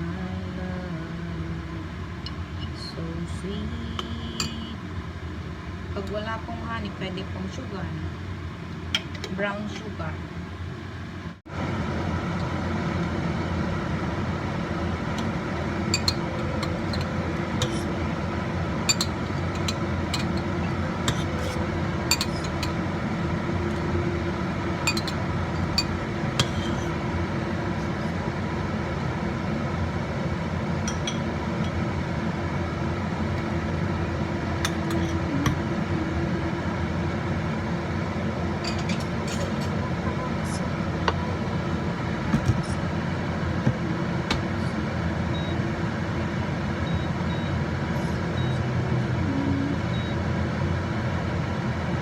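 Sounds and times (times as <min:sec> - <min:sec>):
steady rushing hum: 0:00.0 - 0:52.0
kitchenware clinking: 0:15.9 - 0:17.9, 0:18.8 - 0:22.8, 0:24.8 - 0:27.0, 0:30.8 - 0:31.8, 0:34.6 - 0:35.6, 0:38.6 - 0:39.8.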